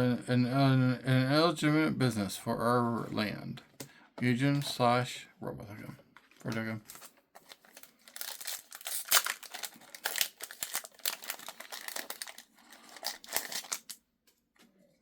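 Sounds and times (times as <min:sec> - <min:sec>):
foil wrapper crinkling and tearing: 0:06.8 - 0:14.0.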